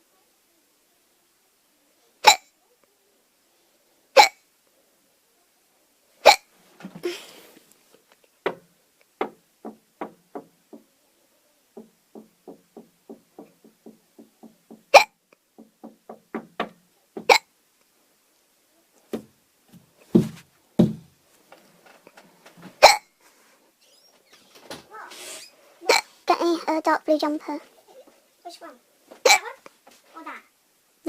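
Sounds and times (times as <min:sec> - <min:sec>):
fainter hiccup-like clicks: 0:02.2 - 0:02.5, 0:14.9 - 0:15.2, 0:22.8 - 0:23.1
person hiccuping: 0:02.2 - 0:02.5, 0:04.2 - 0:04.4, 0:06.2 - 0:06.5, 0:14.9 - 0:15.2, 0:17.3 - 0:17.5, 0:22.8 - 0:23.1, 0:25.9 - 0:26.2, 0:29.3 - 0:29.6.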